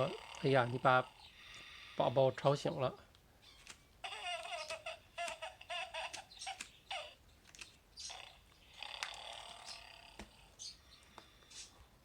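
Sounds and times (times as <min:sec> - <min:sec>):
electronic baby voice: 0:04.0 - 0:07.2.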